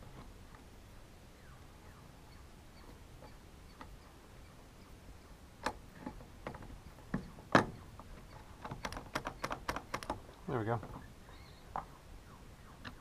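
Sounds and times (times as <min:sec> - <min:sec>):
light clicks and knocks of parts: 0:05.6 - 0:11.0.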